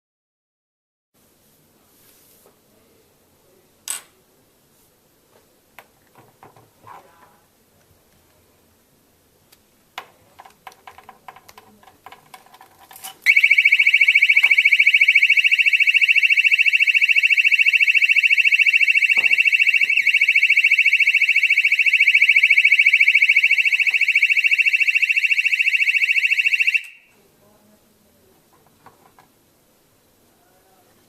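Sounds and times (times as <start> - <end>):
electronic alarm pulsing beeps: 13.3 - 27.1.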